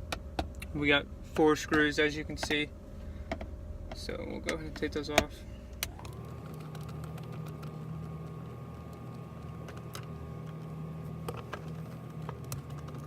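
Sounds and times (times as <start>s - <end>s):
cordless drill motor running: 5.7s - 13.0s.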